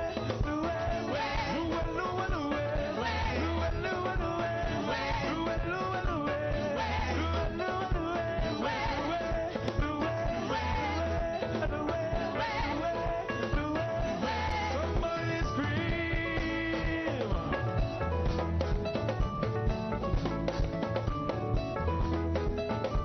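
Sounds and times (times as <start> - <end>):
worship singing over a band: 0.0 - 17.9
repeating bass beat: 0.0 - 23.0.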